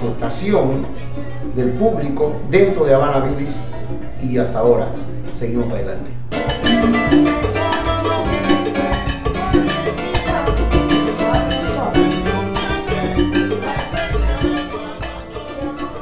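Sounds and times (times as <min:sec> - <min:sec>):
salsa band music: 0:00.0 - 0:16.0.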